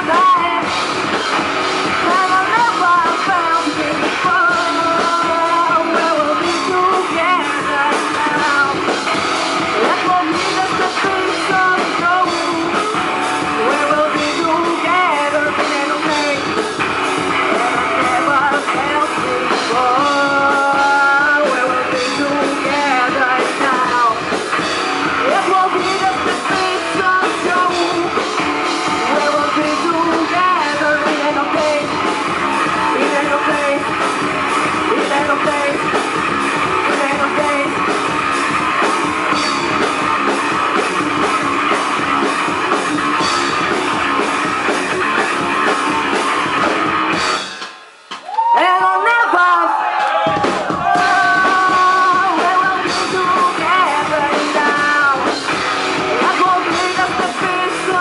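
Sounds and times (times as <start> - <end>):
person singing: 0.0 - 1.2, 1.8 - 37.9, 48.4 - 49.8, 50.7 - 58.0
rock band playing: 0.0 - 58.0.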